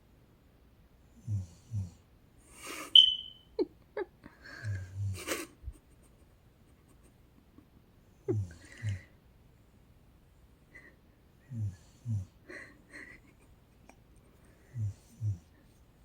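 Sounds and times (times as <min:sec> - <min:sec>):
short squeaks: 0:03.0 - 0:03.4
breath whistle: 0:03.0 - 0:03.5.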